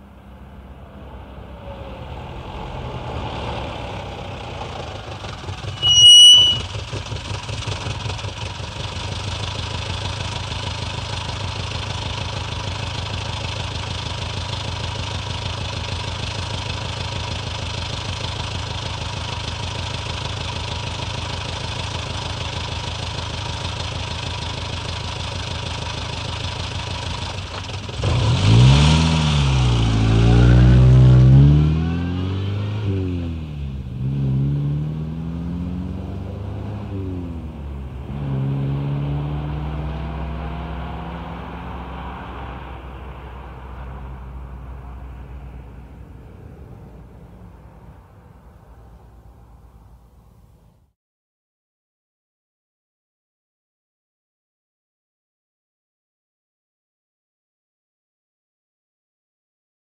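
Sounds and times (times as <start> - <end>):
car engine idling and revving: 0.0 - 5.8, 6.6 - 50.7
brakes squealing: 4.0 - 7.2.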